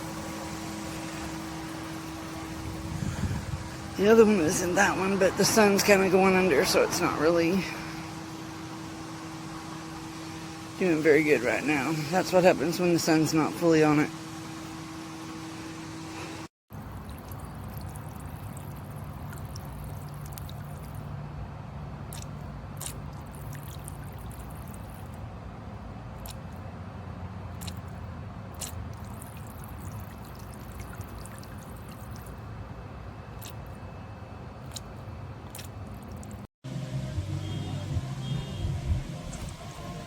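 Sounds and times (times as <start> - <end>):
fountain water splashing: 0.0 - 14.2, 16.8 - 21.0.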